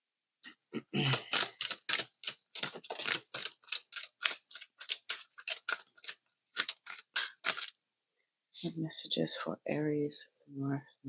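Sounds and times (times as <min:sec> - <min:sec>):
cards being shuffled: 0:00.5 - 0:07.7.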